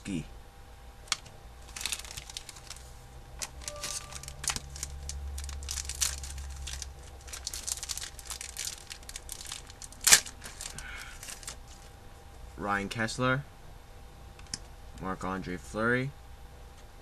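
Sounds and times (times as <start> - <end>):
cards and wrapper rustling: 1.1 - 11.9.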